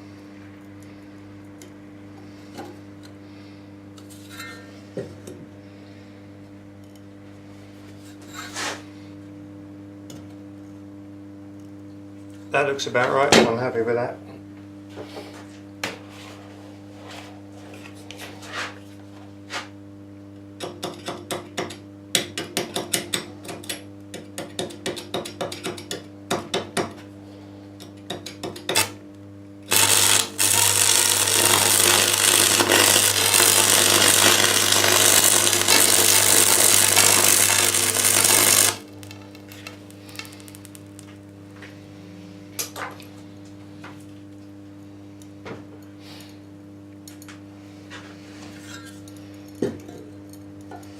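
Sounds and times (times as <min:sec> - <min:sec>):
low electrical hum: 0:00.0 - 0:50.9
welding arc hissing: 0:29.7 - 0:41.1.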